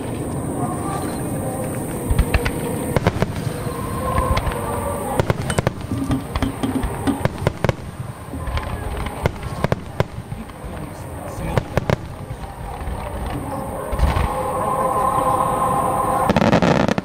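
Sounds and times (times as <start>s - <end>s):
continuous low rumble: 0.0s - 17.0s
firework shells bursting: 4.2s - 14.4s.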